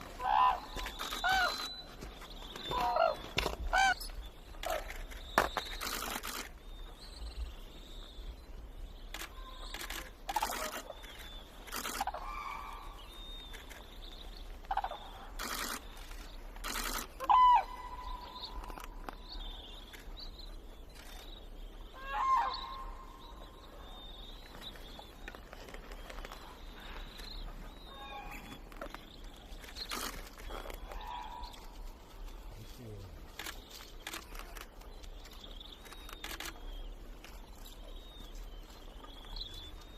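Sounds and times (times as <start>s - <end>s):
cranes calling: 0.0s - 39.9s.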